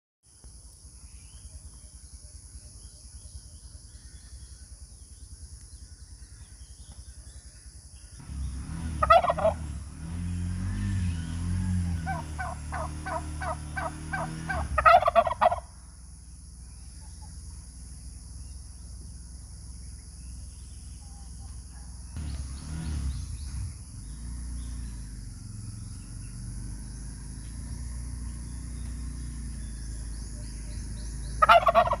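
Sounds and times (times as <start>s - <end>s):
turkey gobbling: 9.0s - 9.6s, 12.0s - 15.7s, 31.4s - 32.0s.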